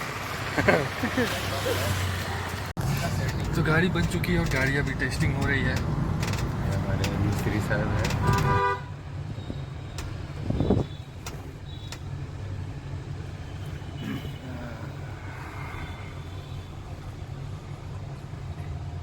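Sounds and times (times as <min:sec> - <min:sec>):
vehicle engine and road rumble: 0:00.0 - 0:19.0.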